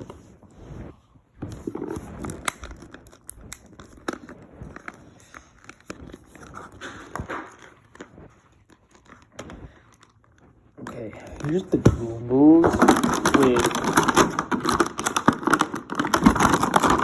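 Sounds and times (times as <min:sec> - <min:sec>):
plastic packaging crinkling: 0:01.5 - 0:17.0
plastic figures clicking and tapping: 0:10.8 - 0:17.0.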